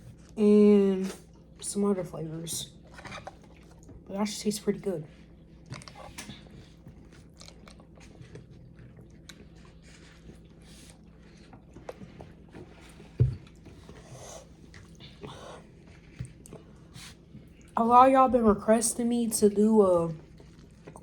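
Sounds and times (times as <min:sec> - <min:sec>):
person chewing food: 0:02.7 - 0:04.0, 0:05.2 - 0:17.8, 0:20.2 - 0:21.0.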